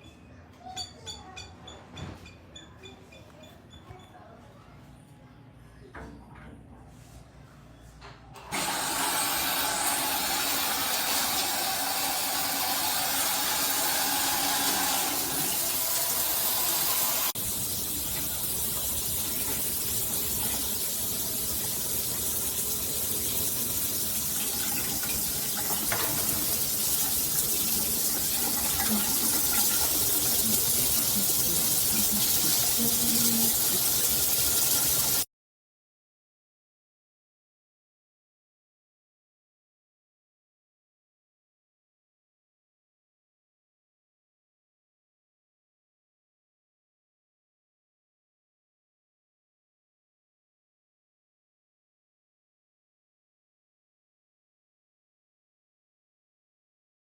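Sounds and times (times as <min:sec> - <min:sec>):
shower water spraying: 0:08.5 - 0:35.3.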